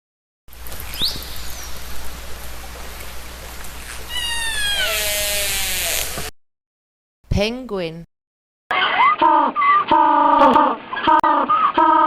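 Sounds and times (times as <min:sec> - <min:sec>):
whale calls: 0:04.1 - 0:06.0.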